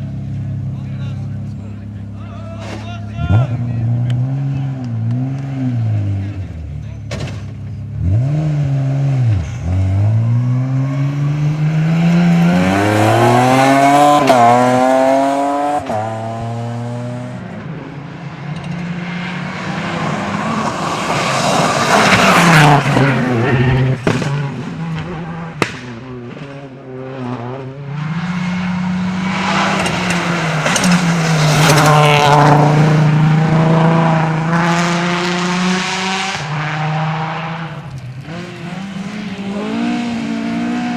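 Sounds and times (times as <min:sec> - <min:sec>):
rally car engines at full throttle: 0:00.0 - 0:40.9
tyre and road noise: 0:00.0 - 0:40.9
sharp crack: 0:24.0 - 0:26.6.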